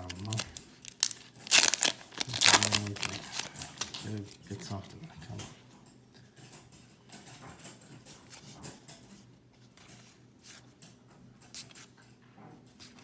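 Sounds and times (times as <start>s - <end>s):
trading cards rustling: 0.0s - 4.5s.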